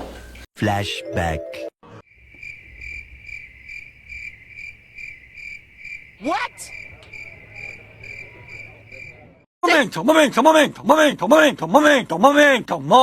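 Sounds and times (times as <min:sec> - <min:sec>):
cricket chirping: 0:02.1 - 0:09.3.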